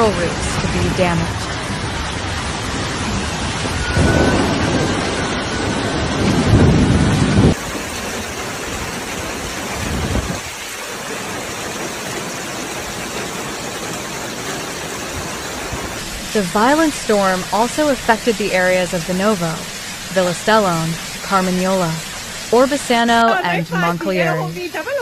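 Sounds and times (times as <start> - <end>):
low thunder rumbling: 0.0 - 10.6
heavy rain pouring: 0.0 - 25.0.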